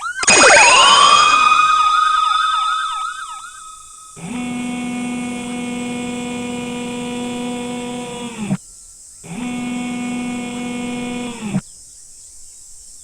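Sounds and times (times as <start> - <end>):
emergency vehicle sirens: 0.0 - 6.7.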